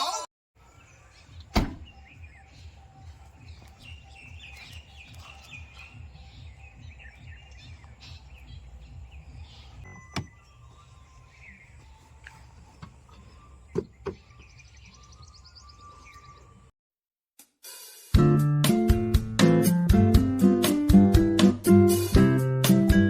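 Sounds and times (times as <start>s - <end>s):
small birds chirping: 0.6s - 16.7s.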